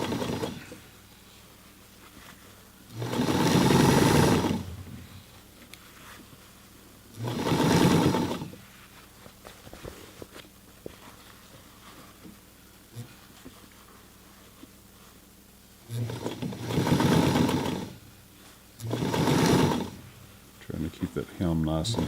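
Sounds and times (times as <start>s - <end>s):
sewing machine stitching: 0.0s - 0.8s, 2.9s - 5.4s, 7.2s - 8.6s, 15.9s - 18.0s, 18.8s - 20.2s.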